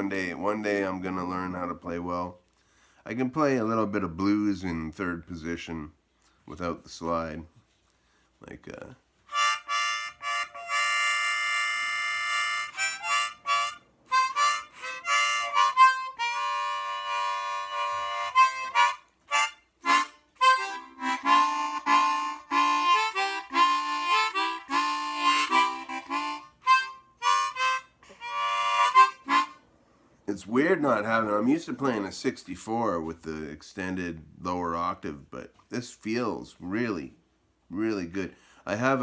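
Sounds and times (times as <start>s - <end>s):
harmonica playing blues: 9.3s - 29.7s.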